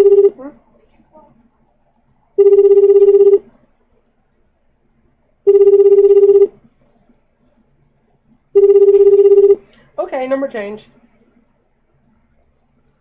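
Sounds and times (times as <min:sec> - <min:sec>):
telephone ringback tone: 0:00.0 - 0:00.4, 0:02.4 - 0:03.5, 0:05.5 - 0:06.6, 0:08.6 - 0:09.6.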